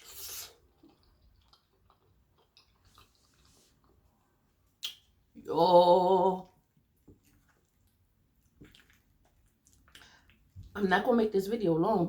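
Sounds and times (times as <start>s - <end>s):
person chewing food: 0.0s - 5.2s, 6.5s - 10.7s.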